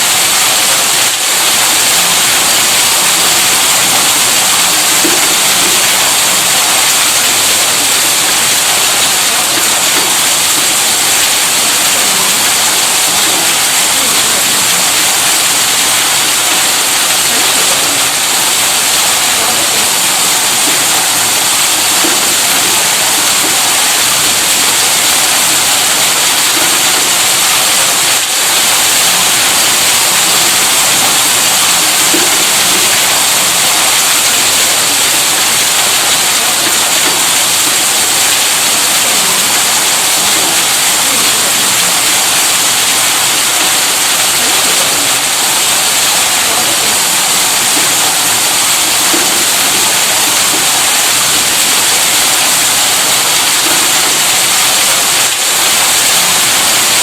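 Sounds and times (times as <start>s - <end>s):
water rushing from pump: 0.0s - 57.0s.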